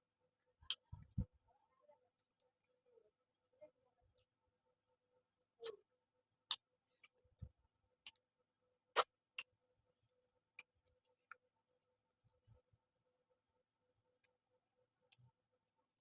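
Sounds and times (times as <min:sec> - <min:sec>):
person eating with clicks and smacks: 0:06.4 - 0:08.2, 0:08.9 - 0:09.5.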